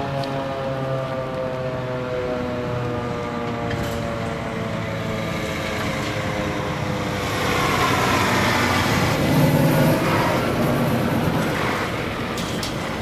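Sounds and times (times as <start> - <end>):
heavy vehicle accelerating past: 5.0 - 13.0.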